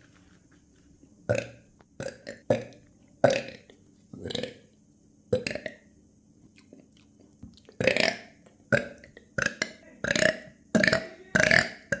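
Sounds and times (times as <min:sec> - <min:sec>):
person burping: 0:01.3 - 0:04.6, 0:07.8 - 0:12.0.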